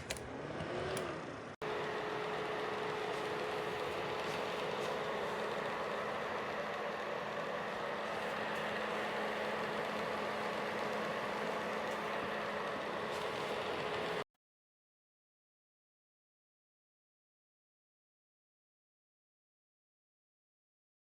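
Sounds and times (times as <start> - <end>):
space heater fan whooshing: 0.0 - 14.2.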